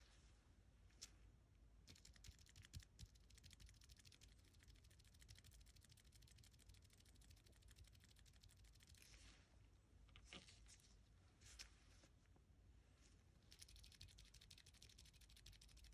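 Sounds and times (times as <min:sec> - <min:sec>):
quiet rapid keyboard typing: 0:01.9 - 0:09.1, 0:13.5 - 0:15.9.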